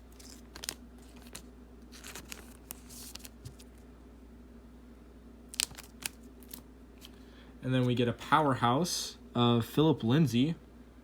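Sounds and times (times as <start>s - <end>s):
trading cards rustling: 0.0s - 3.8s, 5.5s - 7.2s.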